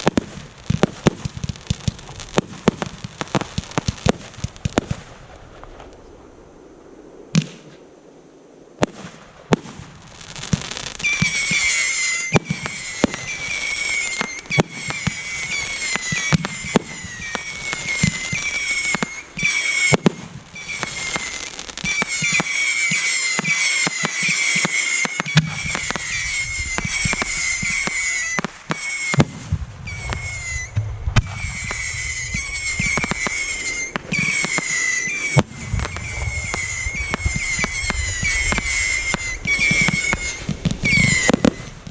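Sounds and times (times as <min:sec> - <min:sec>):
fireworks bangs: 0:00.0 - 0:41.9
fireworks crackling and hissing: 0:00.0 - 0:41.9
deep rumble: 0:29.3 - 0:34.4, 0:35.0 - 0:41.8.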